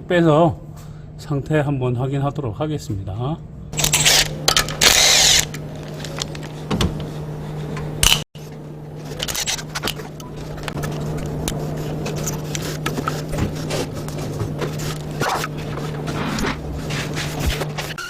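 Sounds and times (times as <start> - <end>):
steady low hum: 3.0 - 18.0
power tool burst: 3.8 - 5.6
tools and metal parts clinking: 3.8 - 6.6.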